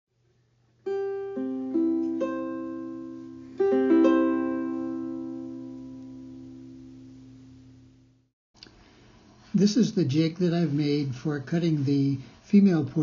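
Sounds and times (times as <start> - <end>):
plucked ukulele: 0.9 - 7.4.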